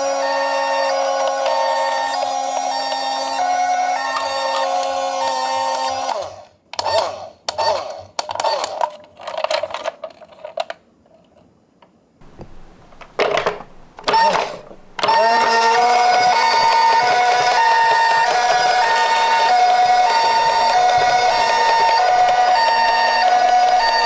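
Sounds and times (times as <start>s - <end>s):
hi-lo ambulance siren: 0.0s - 6.2s, 14.1s - 24.0s
toy car clattering: 7.6s - 11.5s, 12.2s - 24.0s.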